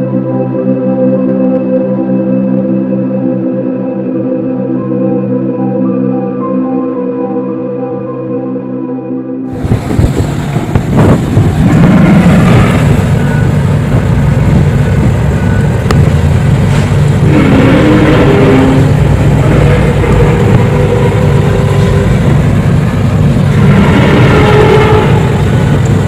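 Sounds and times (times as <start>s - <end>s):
low rumble: 9.5s - 26.0s
wavering moaning tones: 11.2s - 26.0s.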